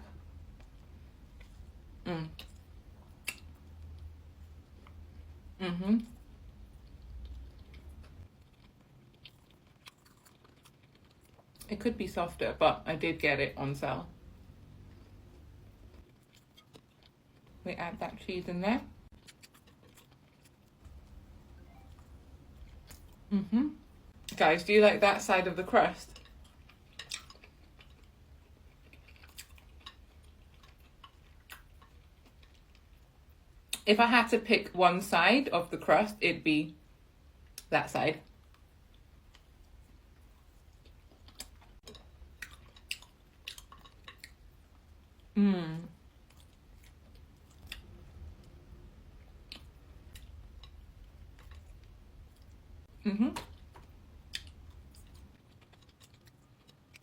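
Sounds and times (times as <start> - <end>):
low quiet hum: 0.0 - 57.0
chewing sandwich: 6.6 - 11.7, 14.8 - 17.6, 19.1 - 21.2, 26.2 - 33.3, 38.3 - 45.3, 53.4 - 57.0.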